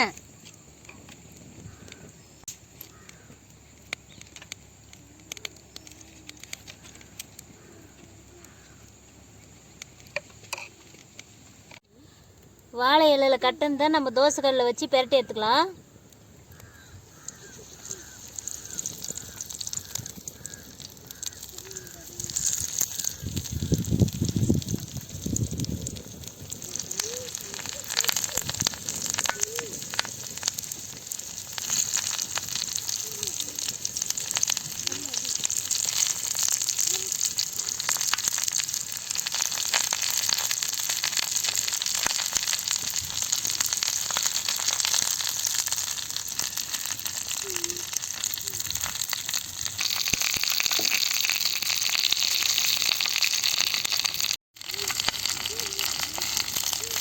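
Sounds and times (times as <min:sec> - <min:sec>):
oil sizzling and crackling: 0:00.0 - 0:57.0
bird calling: 0:16.4 - 0:23.9, 0:26.5 - 0:30.4.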